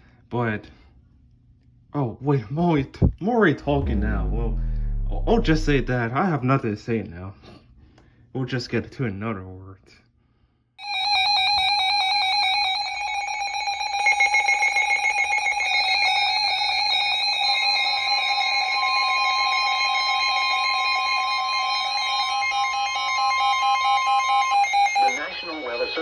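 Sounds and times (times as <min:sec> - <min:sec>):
steady warning tone: 0:03.7 - 0:06.0.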